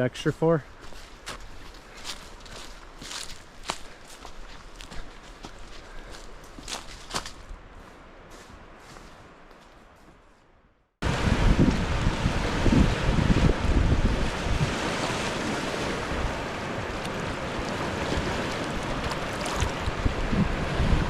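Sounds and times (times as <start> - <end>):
waves breaking on shore: 11.0 - 21.0
wind buffeting microphone: 11.0 - 21.0.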